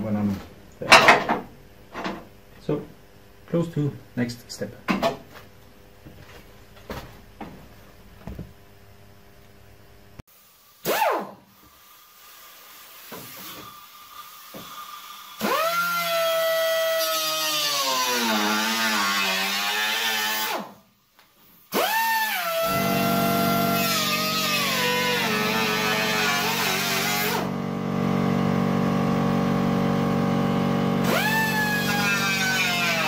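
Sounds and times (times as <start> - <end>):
electric drill whining into metal: 21.8 - 27.5, 31.0 - 33.0.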